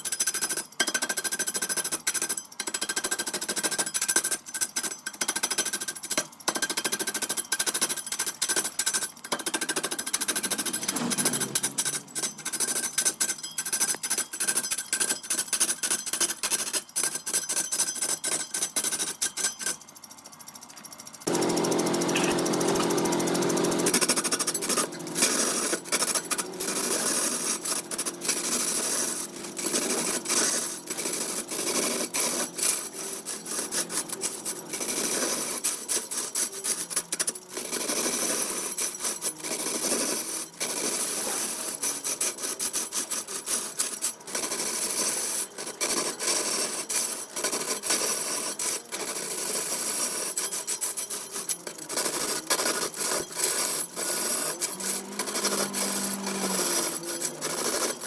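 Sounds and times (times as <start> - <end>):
turning tool scraping wood: 8.4 - 13.2, 21.2 - 58.0
wood lathe hum: 9.9 - 12.8, 21.2 - 36.9, 51.5 - 58.0.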